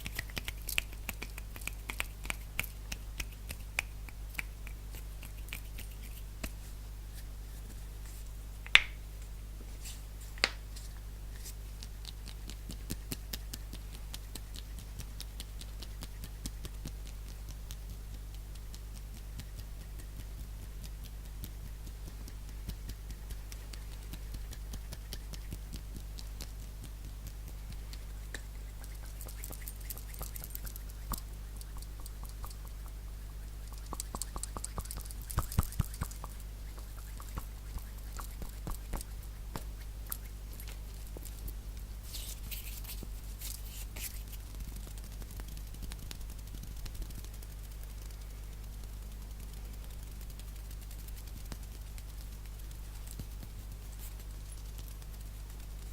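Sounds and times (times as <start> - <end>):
finger and nail taps: 0.0 - 6.6, 8.6 - 9.0, 10.4 - 10.6
steady low hum: 0.0 - 55.9.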